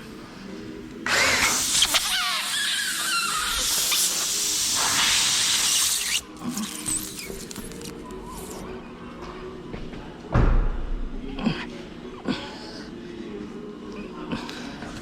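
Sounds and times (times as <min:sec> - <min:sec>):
air hissing from tire: 0:01.4 - 0:07.3.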